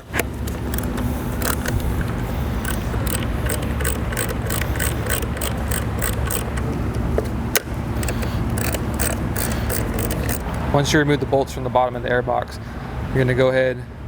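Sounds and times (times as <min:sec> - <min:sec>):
allen key clicking on bolts: 0:00.0 - 0:10.7
steady low hum: 0:00.0 - 0:11.2.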